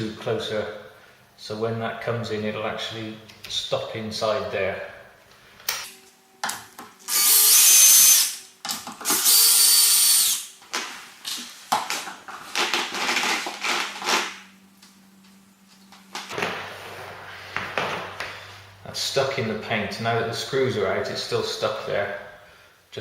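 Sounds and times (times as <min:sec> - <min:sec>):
cordless drill running: 0:07.1 - 0:08.4, 0:09.0 - 0:10.5
handling noises: 0:10.6 - 0:18.4.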